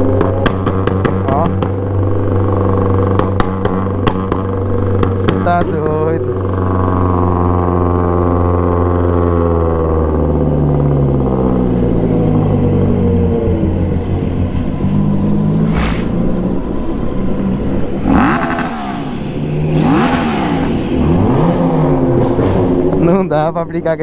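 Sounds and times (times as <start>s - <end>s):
loud vehicle engines revving: 0.0s - 24.0s
brief hiss: 15.6s - 16.2s.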